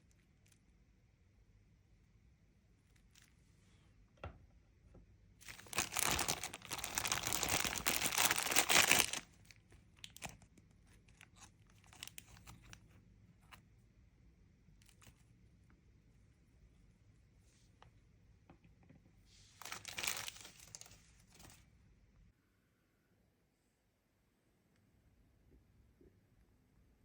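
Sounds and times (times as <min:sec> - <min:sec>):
packaging tearing and crinkling: 0:05.4 - 0:09.4, 0:10.0 - 0:10.4, 0:19.6 - 0:21.6.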